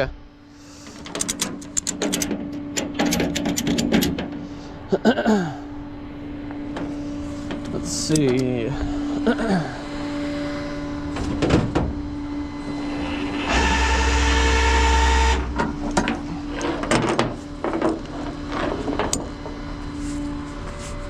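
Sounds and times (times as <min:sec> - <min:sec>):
steady hum: 0:00.0 - 0:21.0
clicks and knocks: 0:00.9 - 0:04.4
loud mechanical whirr: 0:05.8 - 0:21.0.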